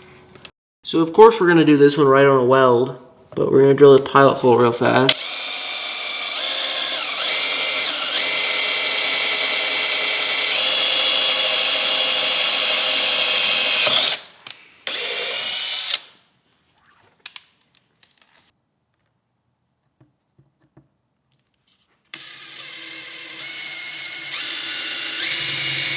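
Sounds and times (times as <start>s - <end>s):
power drill whining: 5.1s - 16.1s, 22.1s - 25.9s.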